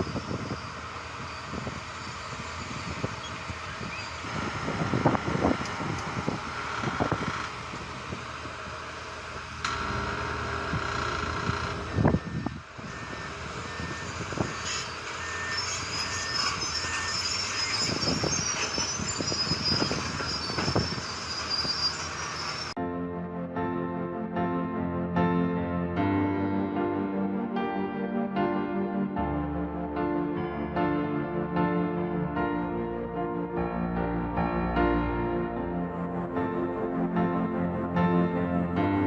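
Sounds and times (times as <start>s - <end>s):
heavy construction machinery clanking: 3.0s - 22.8s
reversing alarm beeping: 12.0s - 18.2s.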